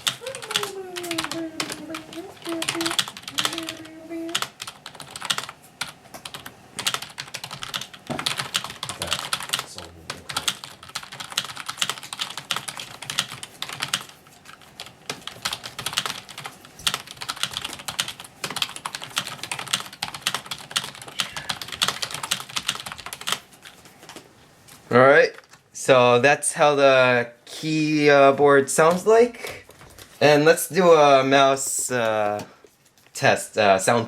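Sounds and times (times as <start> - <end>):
fast keyboard typing clacks: 0.0 - 23.8.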